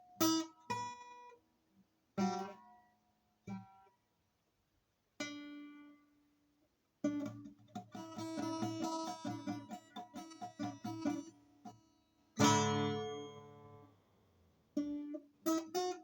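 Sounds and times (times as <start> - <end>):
acoustic guitar strumming: 7.0 - 14.0
acoustic guitar chords ringing: 7.2 - 11.4, 12.4 - 14.0.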